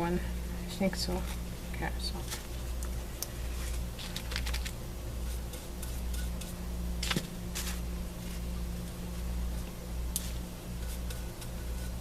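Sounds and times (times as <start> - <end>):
steady low hum: 0.0 - 12.0
paper napkin rustling: 3.4 - 8.6.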